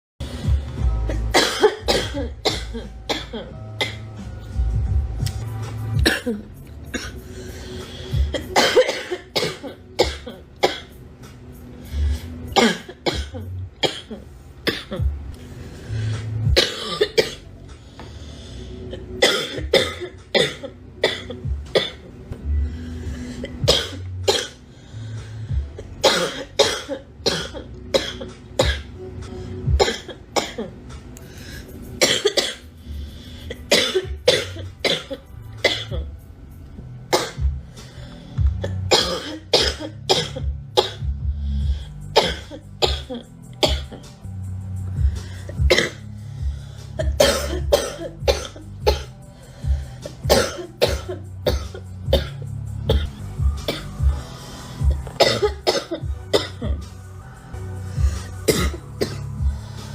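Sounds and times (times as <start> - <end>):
music: 0.2 - 59.9
girl coughing: 1.1 - 4.0, 6.0 - 7.2, 8.3 - 10.9, 12.5 - 15.1, 16.6 - 17.4, 19.2 - 22.0, 23.6 - 24.6, 26.0 - 28.9, 29.8 - 30.7, 32.0 - 32.6, 33.5 - 36.0, 38.6 - 41.0, 42.2 - 44.0, 45.6 - 46.0, 47.0 - 49.1, 50.2 - 53.1, 55.2 - 56.8, 58.5 - 59.2.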